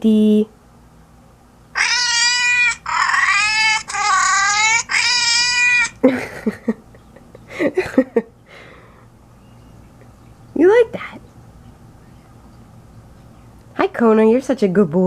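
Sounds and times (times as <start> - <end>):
synthesized cat meows: 1.8 - 6.0.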